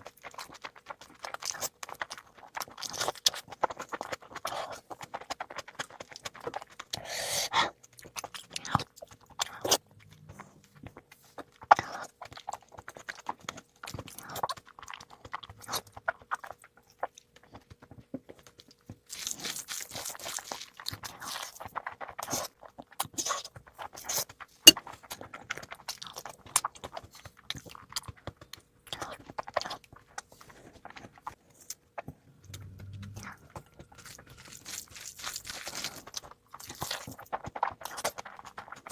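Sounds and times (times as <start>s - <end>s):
person chewing and biting: 0.0s - 38.9s
wet mouth noises: 0.0s - 38.9s.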